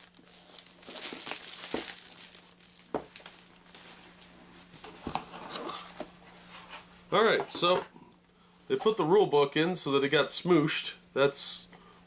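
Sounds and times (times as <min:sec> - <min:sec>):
plastic wrapping crinkling and tearing: 0:00.0 - 0:04.3.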